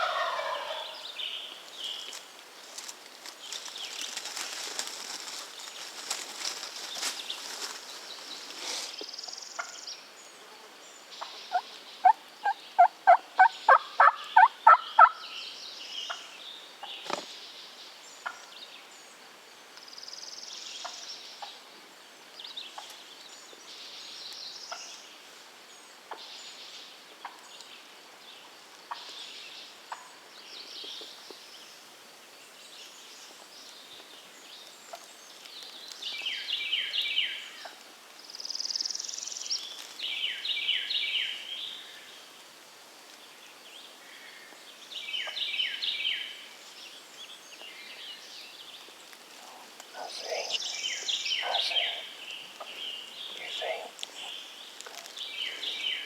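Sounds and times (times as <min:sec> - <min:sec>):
songbirds chirping: 0:00.0 - 0:56.0
turkey yelps: 0:12.8 - 0:15.1.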